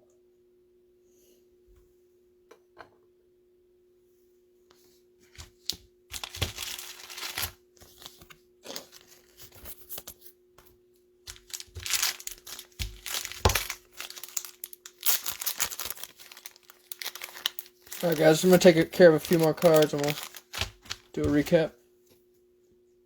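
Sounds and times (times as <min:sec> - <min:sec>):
plastic crinkling and rustling: 0:05.4 - 0:10.3, 0:11.3 - 0:21.7.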